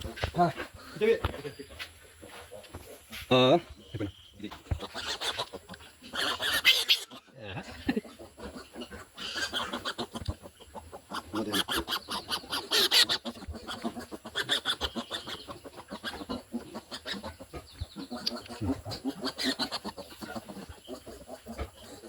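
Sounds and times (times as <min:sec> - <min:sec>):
piglets squealing and grunting: 0:04.5 - 0:22.0.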